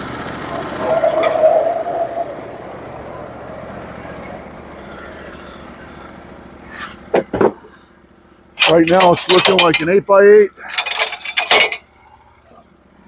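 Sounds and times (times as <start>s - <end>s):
band sawmill cutting: 8.6s - 11.8s.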